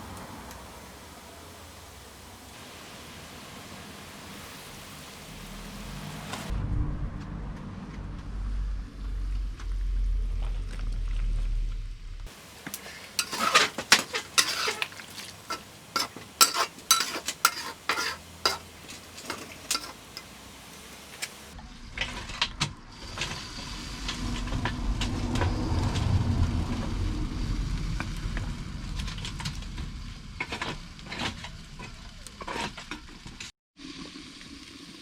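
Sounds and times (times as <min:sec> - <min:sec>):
frying sizzle: 0:00.0 - 0:06.5, 0:12.3 - 0:21.6, 0:23.0 - 0:35.0
low rumble: 0:05.2 - 0:12.3, 0:21.5 - 0:33.4
metal utensil scraping a pan: 0:12.3 - 0:22.2.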